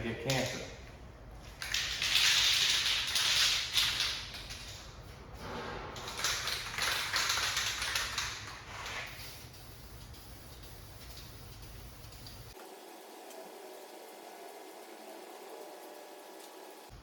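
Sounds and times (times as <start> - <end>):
aerosol spray can hissing: 8.9 - 16.9.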